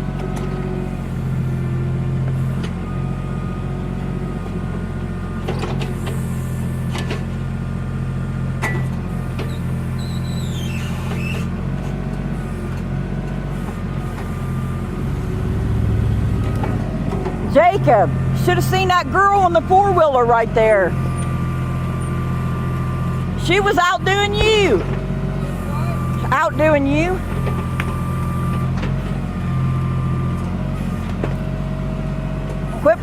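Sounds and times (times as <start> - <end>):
backhoe engine running: 0.0 - 33.0
short falling squeak: 9.5 - 11.5.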